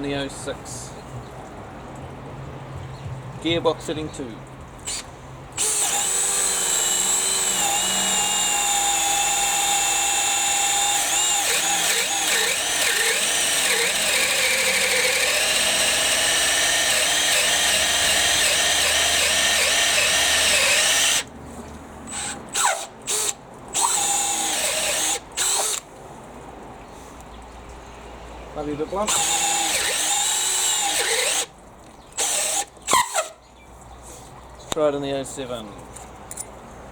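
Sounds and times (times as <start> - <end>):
drill boring into wood: 5.6 - 21.3, 22.1 - 25.8, 29.0 - 31.5, 32.2 - 33.4
short drill trigger bursts: 5.6 - 21.3, 22.1 - 25.8, 29.1 - 31.5, 32.2 - 33.4.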